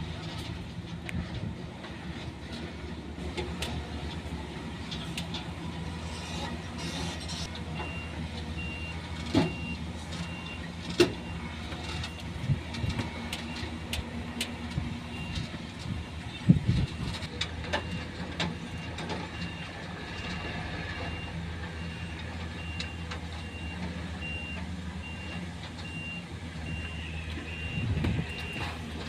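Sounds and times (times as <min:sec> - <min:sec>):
diesel engine running: 0:00.0 - 0:29.0
reversing alarm beeping: 0:07.8 - 0:11.4, 0:21.0 - 0:28.8.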